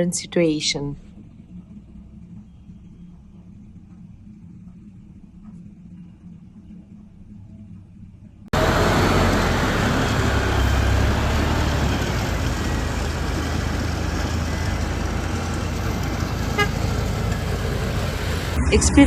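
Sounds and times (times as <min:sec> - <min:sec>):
vehicle engine rumble: 0:01.1 - 0:19.0
road noise: 0:08.5 - 0:19.0.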